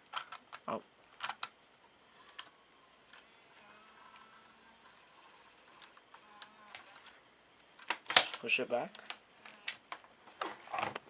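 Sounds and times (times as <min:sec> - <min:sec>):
plastic cassette clicks: 0:01.2 - 0:01.6
tape motor whirring: 0:01.4 - 0:07.8, 0:09.0 - 0:10.0.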